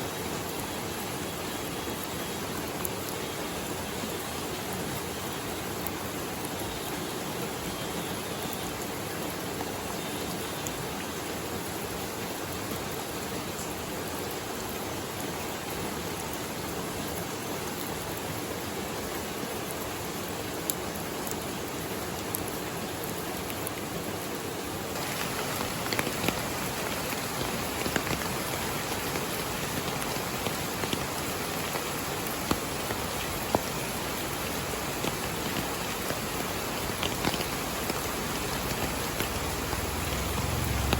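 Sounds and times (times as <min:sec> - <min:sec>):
steady rain: 0:00.0 - 0:40.9
running water: 0:21.8 - 0:40.9
raindrops ticking: 0:25.0 - 0:40.9.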